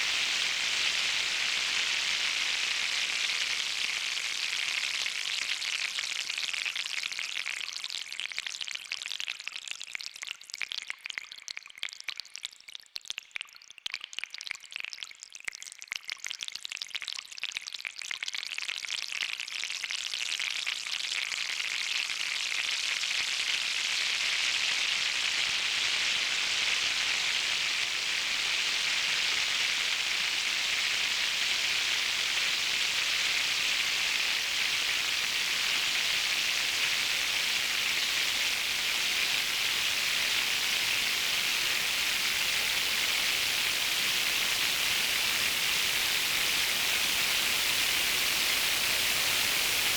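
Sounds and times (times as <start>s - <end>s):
synth rain-like crackling hiss: 0.0s - 5.9s, 23.2s - 49.9s.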